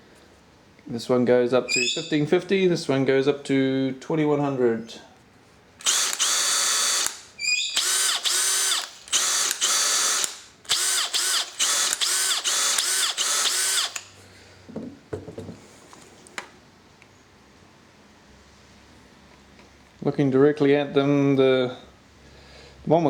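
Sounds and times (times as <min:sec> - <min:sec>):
cordless drill spinning up: 0:05.8 - 0:14.2.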